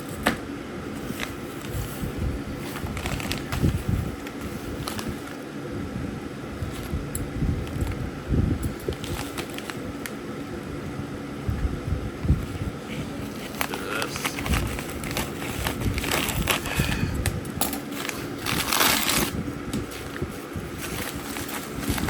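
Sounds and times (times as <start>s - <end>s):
steady fan-like hum: 0.0s - 22.0s
packaging rustling and clicks: 2.6s - 5.4s, 8.6s - 10.2s, 13.2s - 17.0s, 17.6s - 22.0s.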